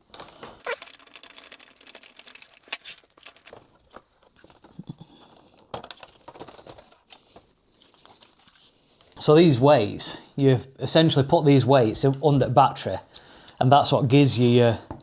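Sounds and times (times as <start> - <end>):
rustling: 0.1 - 8.8
small parts clicking: 0.6 - 3.6.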